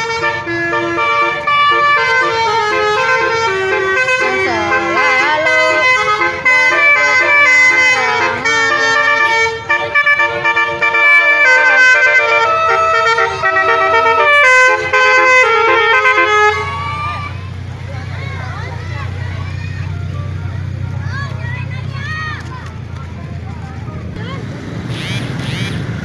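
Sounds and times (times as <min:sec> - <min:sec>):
multi-tone musical car horn: 0:00.0 - 0:19.0.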